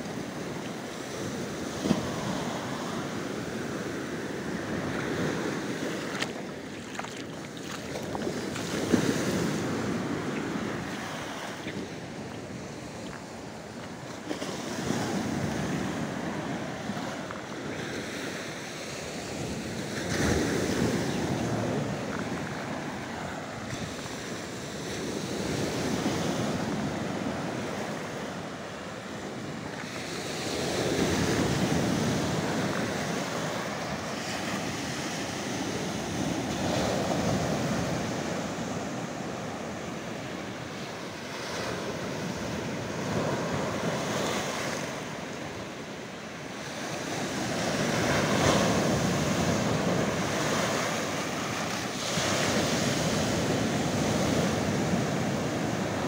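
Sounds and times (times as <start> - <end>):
sea waves on rocky shore: 0.0 - 56.0
wind buffeting microphone: 19.2 - 28.5.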